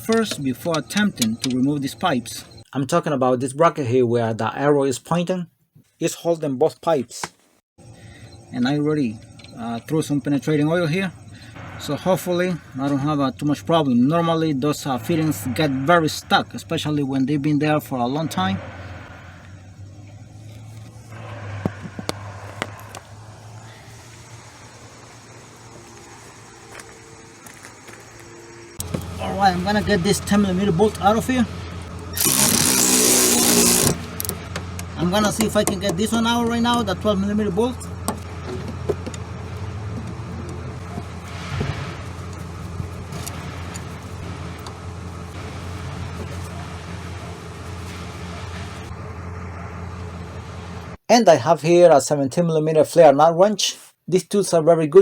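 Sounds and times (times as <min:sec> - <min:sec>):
steady low hum: 0:07.8 - 0:50.9.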